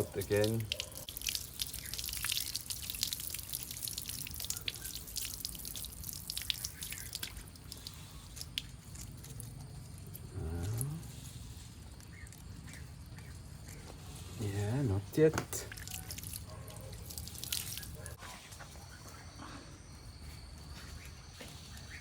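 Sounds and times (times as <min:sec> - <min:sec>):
water dripping: 0:00.0 - 0:13.8, 0:15.1 - 0:18.2.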